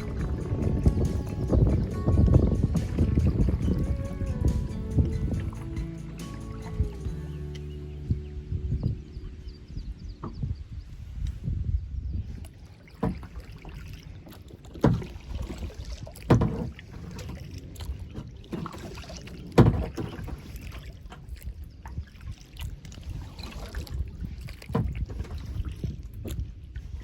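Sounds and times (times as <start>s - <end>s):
low steady rumble: 0.0s - 12.2s.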